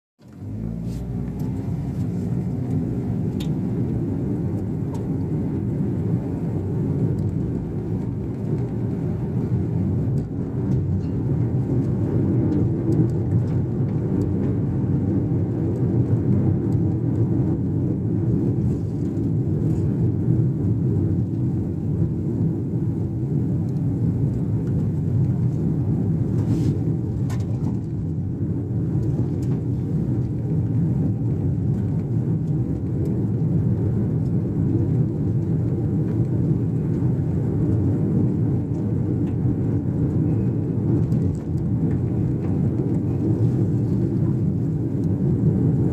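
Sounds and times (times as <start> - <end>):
car road and engine rumble: 0.2 - 45.9.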